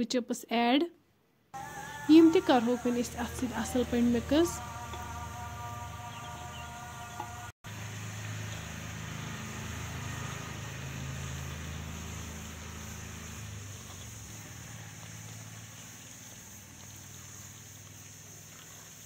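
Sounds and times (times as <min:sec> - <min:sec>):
chips frying in oil: 0:10.6 - 0:19.0.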